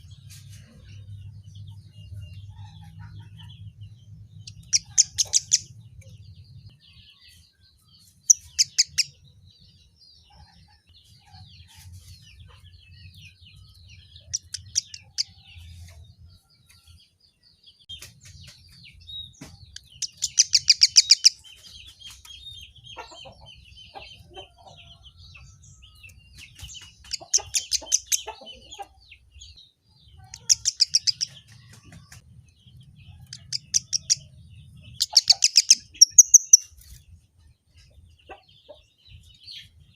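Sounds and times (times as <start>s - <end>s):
bird chattering: 4.4s - 6.2s, 14.3s - 15.3s, 19.8s - 24.6s, 26.4s - 29.0s, 30.2s - 31.8s, 33.1s - 36.8s
bird trilling: 34.9s - 36.7s.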